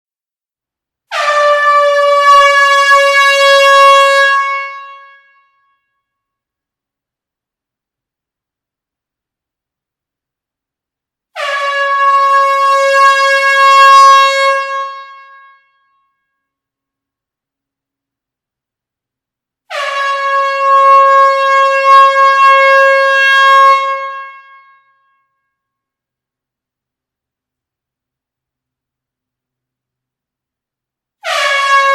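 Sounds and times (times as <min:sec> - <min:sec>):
air horn long blast: 0:01.1 - 0:05.8, 0:11.4 - 0:15.8, 0:19.7 - 0:25.2, 0:31.2 - 0:31.9.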